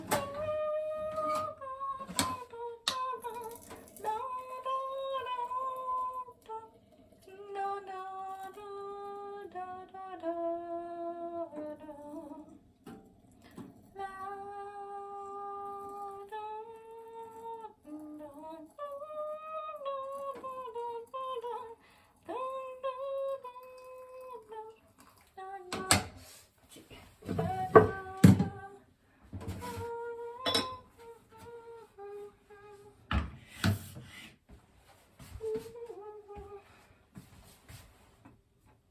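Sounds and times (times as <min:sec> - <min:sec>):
woman humming a slow tune: 0:29.6 - 0:33.0, 0:35.4 - 0:36.8.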